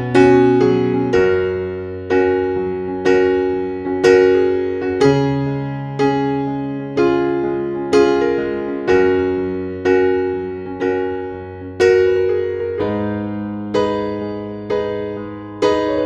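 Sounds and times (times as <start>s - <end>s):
slow gentle piano: 0.0s - 16.0s.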